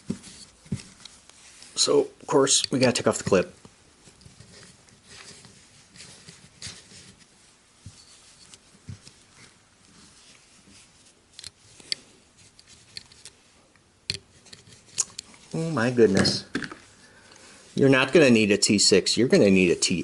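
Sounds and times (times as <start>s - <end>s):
screwdriver clicks and scrapes: 11.3s - 13.4s, 14.1s - 15.4s.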